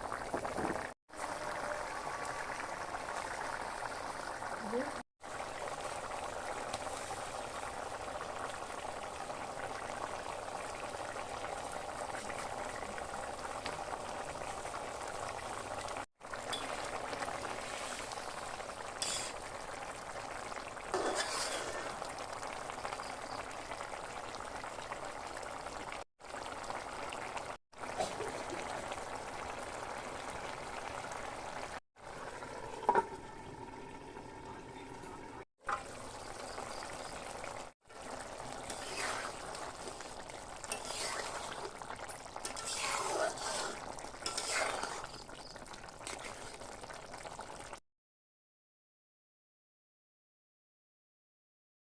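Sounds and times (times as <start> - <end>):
curry bubbling and sizzling in pan: 0.0 - 34.0, 35.6 - 47.8
spoon stirring in pan: 19.0 - 19.4, 21.0 - 22.0, 38.5 - 46.7.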